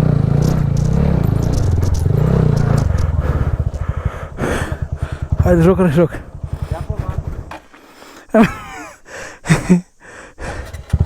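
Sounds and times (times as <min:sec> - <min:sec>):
motorcycle engine revving: 0:00.0 - 0:07.8, 0:10.5 - 0:11.0.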